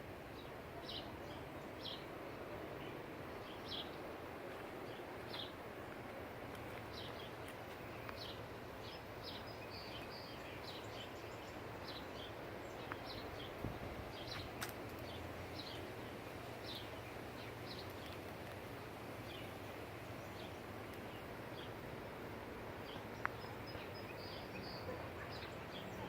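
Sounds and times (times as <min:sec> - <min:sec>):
bird chirping: 0:08.0 - 0:15.9, 0:22.8 - 0:26.0.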